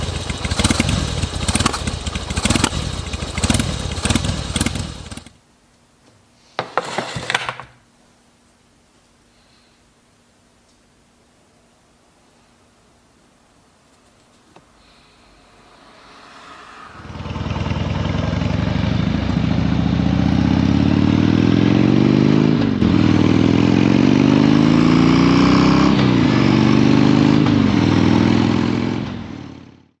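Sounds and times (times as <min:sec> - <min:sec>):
motorcycle engine accelerating: 0:00.0 - 0:05.4, 0:15.0 - 0:30.0.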